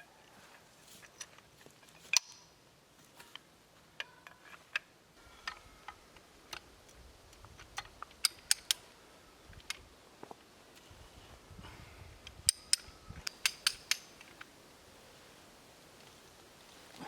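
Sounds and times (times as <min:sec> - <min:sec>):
metal pipe fittings clinking: 0:12.4 - 0:14.2.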